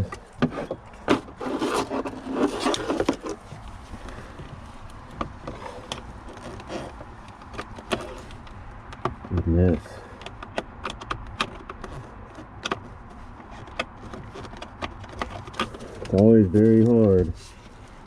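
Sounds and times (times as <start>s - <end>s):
hand tools clicking and scraping: 0.0s - 17.8s.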